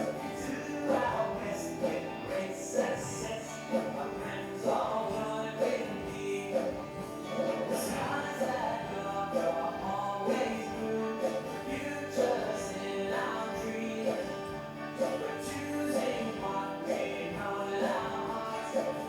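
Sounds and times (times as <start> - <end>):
voices singing with accompaniment: 0.0 - 19.0.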